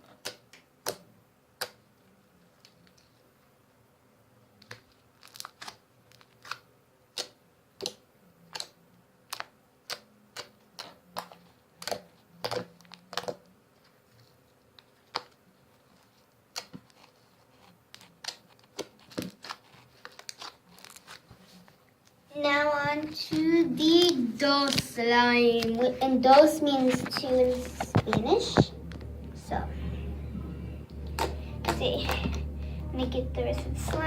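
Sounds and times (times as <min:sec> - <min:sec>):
slime squished by hand: 0:04.6 - 0:13.4, 0:30.8 - 0:34.0.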